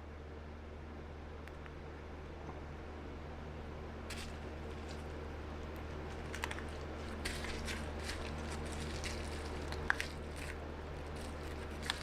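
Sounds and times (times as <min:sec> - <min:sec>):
steady low hum: 0:00.0 - 0:12.0
faint scratches and small clicks: 0:04.1 - 0:12.0.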